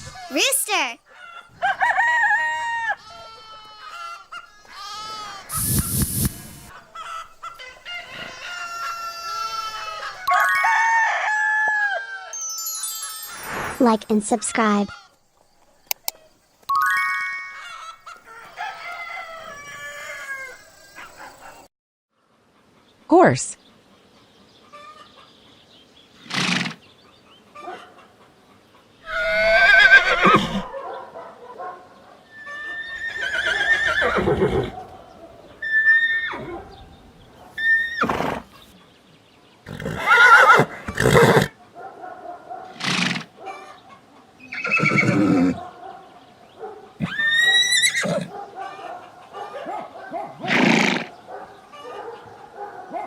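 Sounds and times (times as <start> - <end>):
rooster crowing: 1.1 - 5.5, 6.6 - 12.4, 17.8 - 21.2
short noisy burst: 5.5 - 6.7
horse whinnying: 29.1 - 30.7, 32.3 - 34.8, 35.6 - 36.6, 37.6 - 38.6, 39.7 - 41.5, 44.4 - 45.6, 47.0 - 48.3, 50.4 - 51.1.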